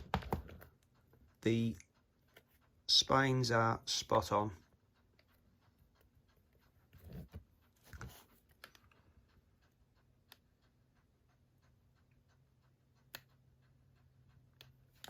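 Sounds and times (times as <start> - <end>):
plastic cases knocking and rustling: 0.0 - 0.7.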